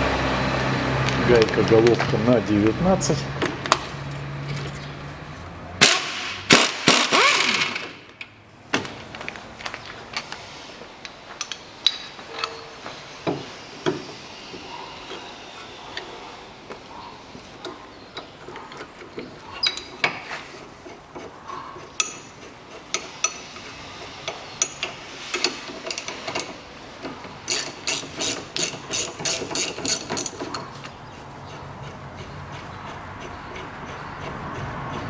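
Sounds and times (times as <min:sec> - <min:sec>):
ratchet wrench clicks: 0:06.6 - 0:07.9, 0:24.2 - 0:26.6, 0:27.5 - 0:30.5.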